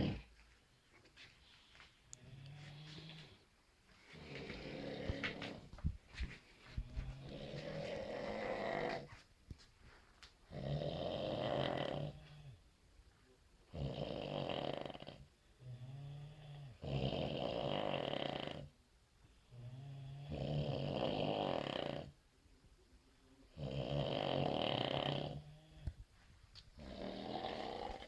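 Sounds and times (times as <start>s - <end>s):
loud rasping snoring: 0.0s - 0.3s, 4.2s - 5.7s, 7.1s - 9.1s, 10.5s - 12.4s, 13.7s - 18.7s, 19.7s - 22.2s, 23.5s - 25.6s, 26.8s - 28.0s.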